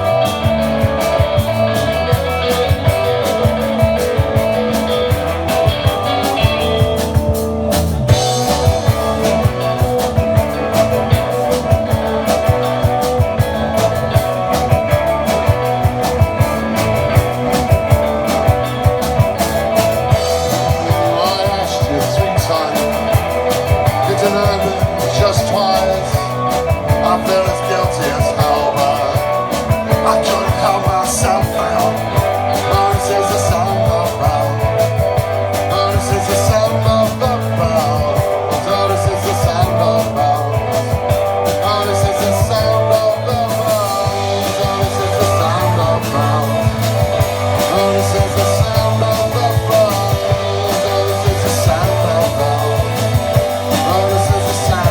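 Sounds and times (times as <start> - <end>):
band playing live: 0.0 - 54.9.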